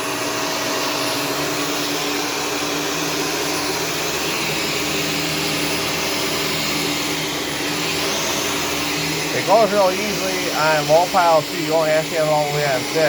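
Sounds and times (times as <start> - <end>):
vacuum cleaner on carpet: 0.0 - 13.0.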